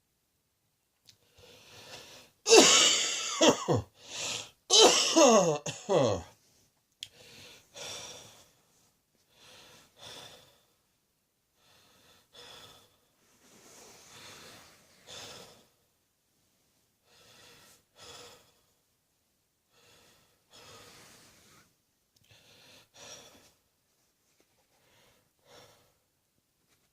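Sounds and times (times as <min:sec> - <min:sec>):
person breathing: 0:01.2 - 0:02.5, 0:03.9 - 0:04.6, 0:05.9 - 0:10.9, 0:11.6 - 0:15.8, 0:17.0 - 0:18.8, 0:19.7 - 0:23.7, 0:24.4 - 0:26.1.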